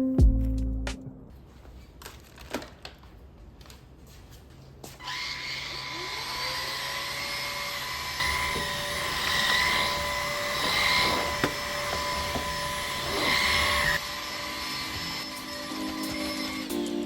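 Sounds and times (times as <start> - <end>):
vacuum cleaner motor whining: 5.0 - 16.8.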